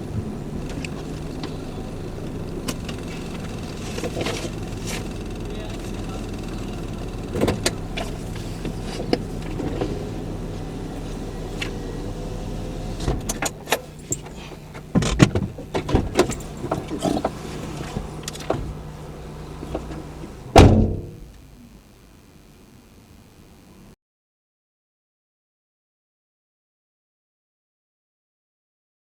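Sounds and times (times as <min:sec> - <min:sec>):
car engine running: 0:00.0 - 0:23.9
loud thump: 0:20.5 - 0:21.4.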